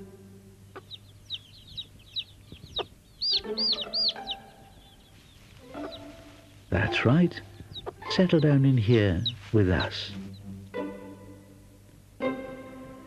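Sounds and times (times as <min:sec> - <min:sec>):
chicks peeping: 0:00.7 - 0:10.8
hen clucking: 0:00.7 - 0:11.0.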